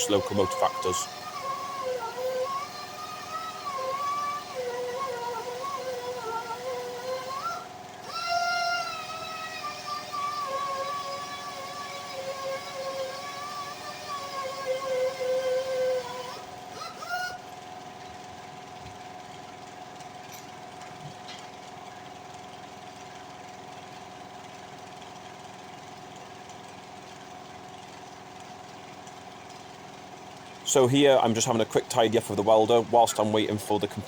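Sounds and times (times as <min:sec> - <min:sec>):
high whine: 0:00.0 - 0:17.6
air compressor running: 0:00.0 - 0:34.0.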